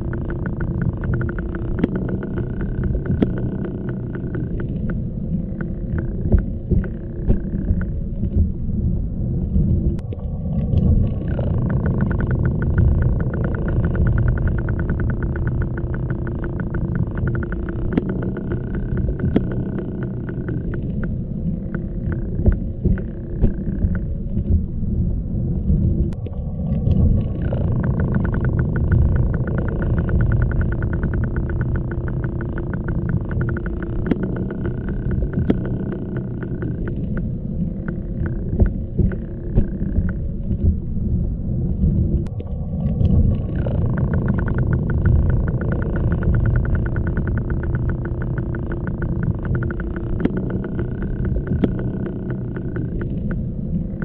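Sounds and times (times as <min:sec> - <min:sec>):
motor-like rumble with humming tones: 0:00.0 - 0:54.0
fast even ticking: 0:10.8 - 0:21.1, 0:26.8 - 0:42.0, 0:42.8 - 0:53.4.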